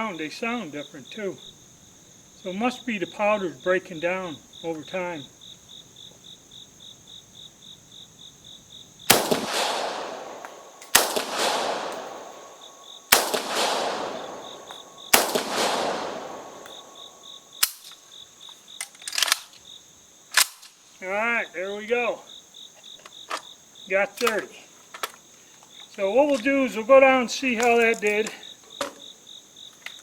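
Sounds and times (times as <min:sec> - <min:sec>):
crickets chirping: 0:00.0 - 0:30.0
rifle gunshots with echo: 0:09.1 - 0:17.8.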